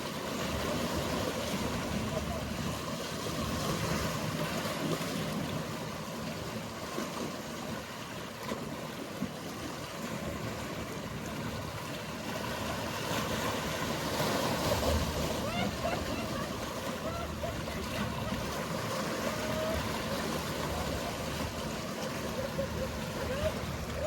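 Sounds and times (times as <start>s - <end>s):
sea water washing on shore: 0.0s - 24.0s
motorboats humming: 10.6s - 24.0s.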